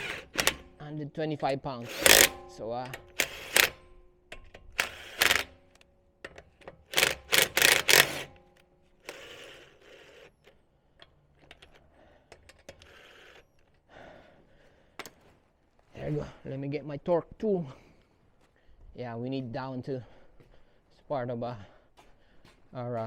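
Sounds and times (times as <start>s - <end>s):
tools rattling on lug nuts: 0.0s - 13.9s.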